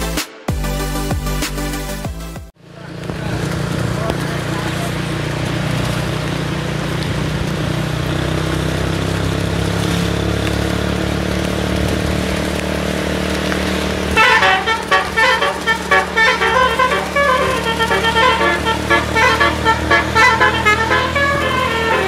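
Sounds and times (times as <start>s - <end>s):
bus engine droning: 2.6s - 22.0s
multi-trumpet bus horn tune: 14.1s - 22.0s.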